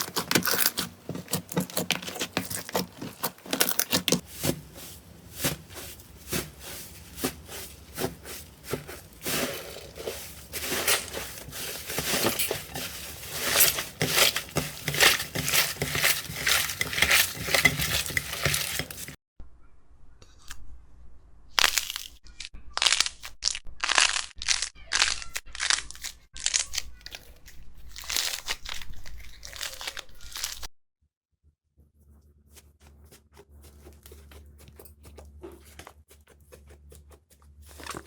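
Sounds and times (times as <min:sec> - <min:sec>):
slime squeezed crackling and popping: 0:21.6 - 0:30.6.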